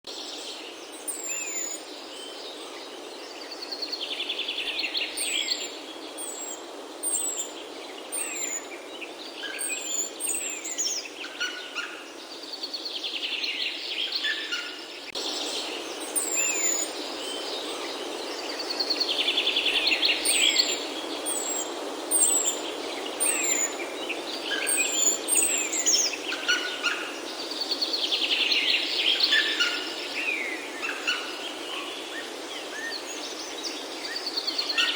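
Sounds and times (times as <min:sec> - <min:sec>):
steady background hiss: 0:00.1 - 0:34.9
birds chirping: 0:15.3 - 0:30.1.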